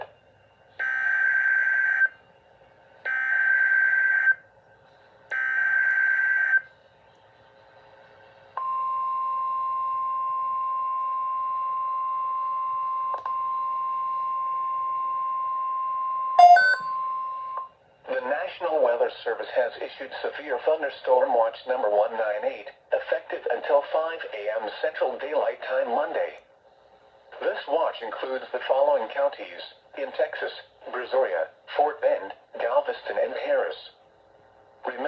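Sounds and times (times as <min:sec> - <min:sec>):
steady warning alarm tone: 0:16.4 - 0:17.0.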